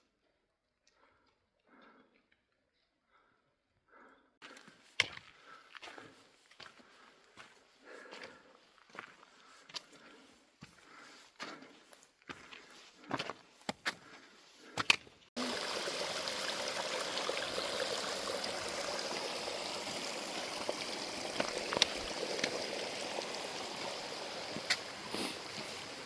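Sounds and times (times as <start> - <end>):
running water: 15.4 - 26.0.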